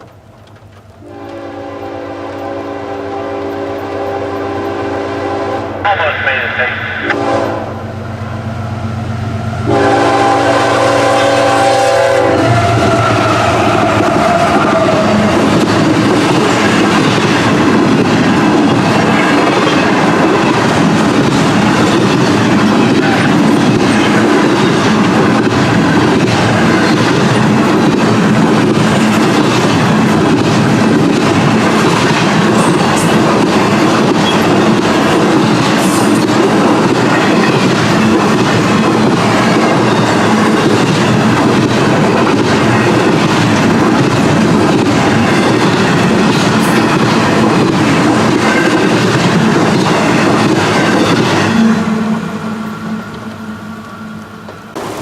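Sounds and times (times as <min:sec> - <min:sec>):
train passing on rails: 0:00.0 - 0:55.0
train horn: 0:01.0 - 0:05.8, 0:07.1 - 0:07.9, 0:09.6 - 0:15.4, 0:51.5 - 0:54.2.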